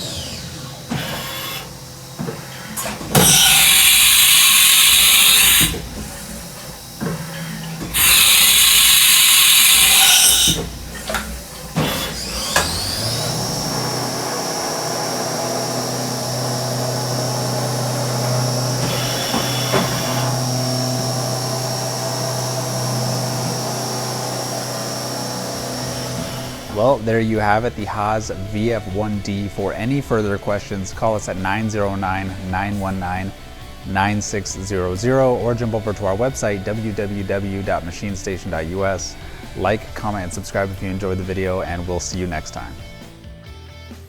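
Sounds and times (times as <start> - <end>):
loud air hissing blasts: 0.0 - 43.2
spindle high-pitched whine: 0.0 - 43.2.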